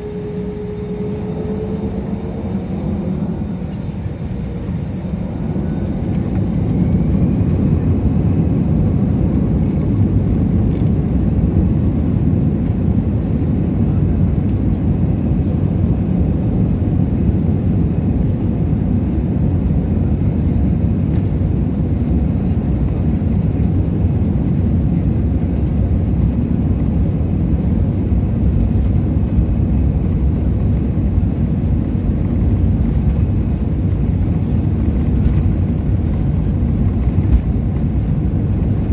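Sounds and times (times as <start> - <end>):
faint rising whine: 0.0 - 7.9
airplane cabin engine roar: 0.0 - 38.9.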